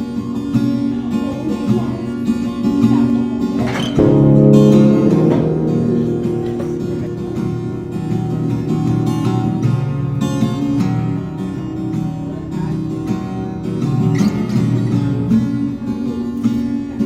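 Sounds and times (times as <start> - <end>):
acoustic guitar music: 2.6 - 17.0
short sharp sound: 4.0 - 9.1.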